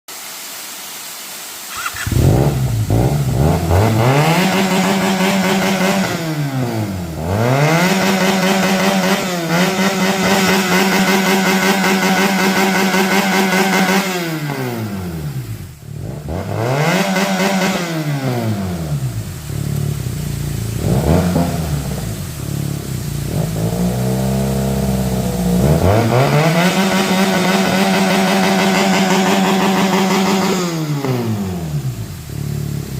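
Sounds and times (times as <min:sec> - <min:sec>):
motorcycle engine revving: 0:01.7 - 0:32.9.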